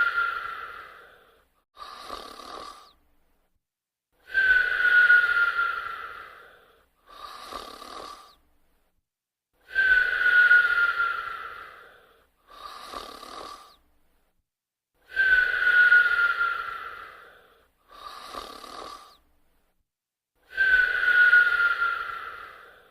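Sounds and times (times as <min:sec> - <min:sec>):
whistling snoring: 0:00.0 - 0:03.0, 0:04.2 - 0:08.4, 0:09.6 - 0:13.9, 0:15.0 - 0:19.3, 0:20.4 - 0:22.9.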